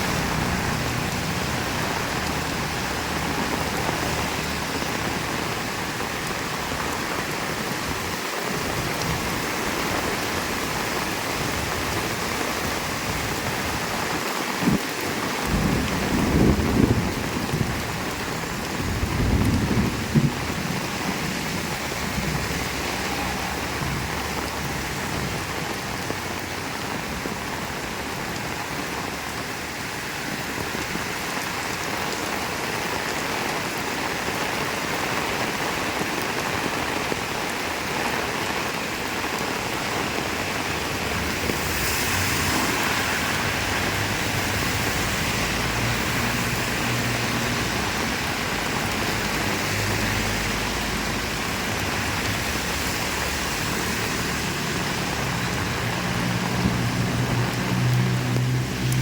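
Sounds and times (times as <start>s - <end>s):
heavy rain falling: 0.0s - 59.0s.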